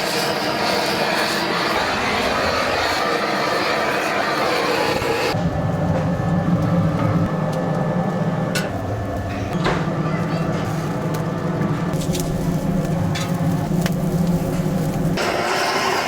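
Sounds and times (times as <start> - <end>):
steady low hum: 0.8 - 15.2
firewood crackling and popping: 10.6 - 15.2.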